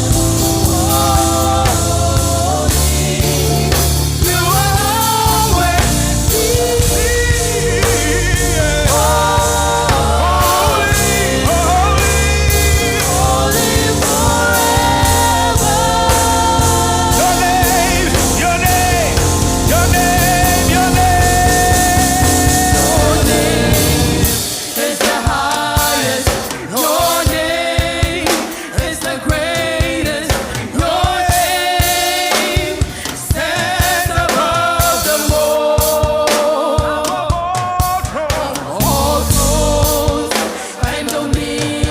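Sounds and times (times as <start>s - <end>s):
band playing: 0.0s - 41.9s
gospel singer and choir: 0.0s - 41.9s.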